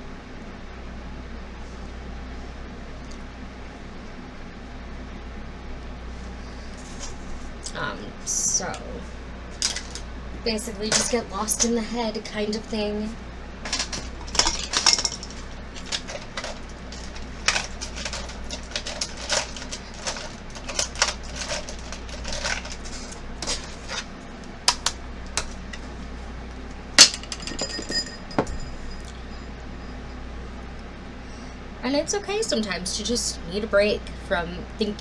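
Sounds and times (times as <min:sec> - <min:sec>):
makeup cases clicking on hard surface: 0:09.6 - 0:10.0, 0:13.6 - 0:24.1, 0:24.7 - 0:25.9.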